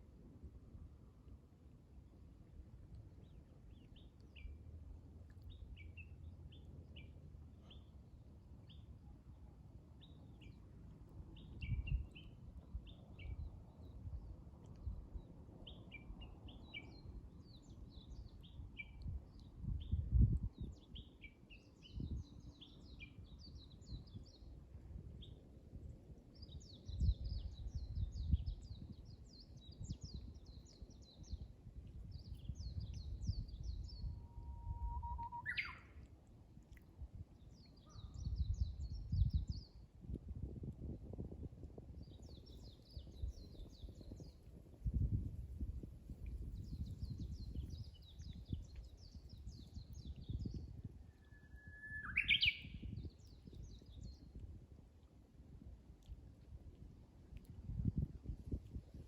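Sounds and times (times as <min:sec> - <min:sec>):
songbirds chirping: 0:46.2 - 0:55.3.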